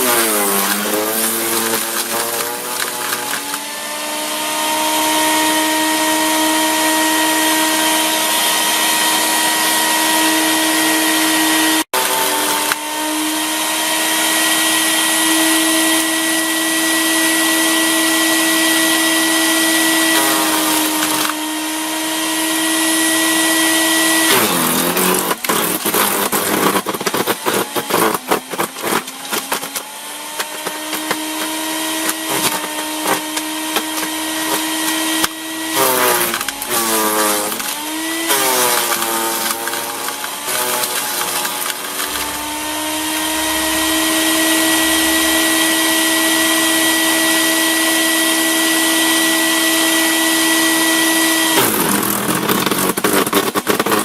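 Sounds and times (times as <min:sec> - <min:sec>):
chipper motor whine: 0:00.0 - 0:54.0.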